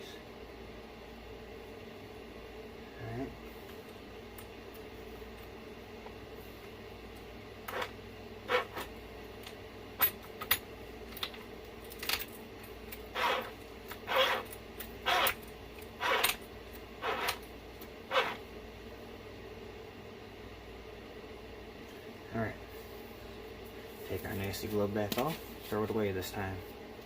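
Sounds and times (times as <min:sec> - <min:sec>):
clicks and clinks of metal parts: 0:10.0 - 0:13.0.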